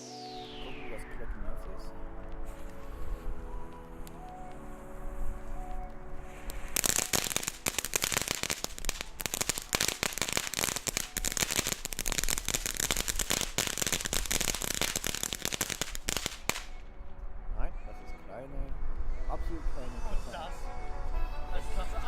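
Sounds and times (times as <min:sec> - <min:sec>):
firework fountain crackling: 0:05.6 - 0:16.8.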